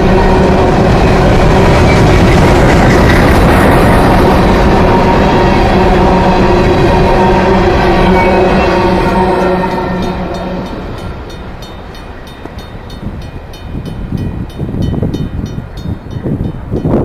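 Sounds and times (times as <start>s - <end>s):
locomotive pitched tone: 0.0s - 17.0s
train rumble: 0.0s - 17.0s
train wheels clicking over rail joints: 0.8s - 5.9s, 8.2s - 17.0s.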